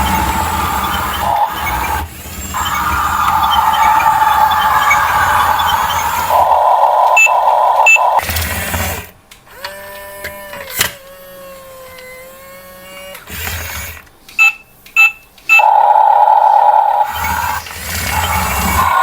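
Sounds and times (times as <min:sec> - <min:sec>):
held electronic tone: 0:00.0 - 0:08.2, 0:14.4 - 0:19.0
toy electric motors whirring: 0:00.0 - 0:14.4, 0:15.5 - 0:19.0
short beeps: 0:07.1 - 0:08.2.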